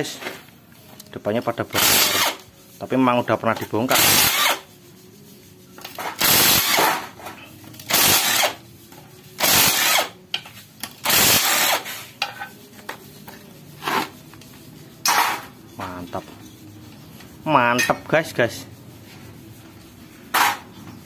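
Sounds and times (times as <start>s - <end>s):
power tool bursts: 1.8s - 2.4s, 4.0s - 4.6s, 6.2s - 6.9s, 7.9s - 8.6s, 9.4s - 10.1s, 11.0s - 11.9s.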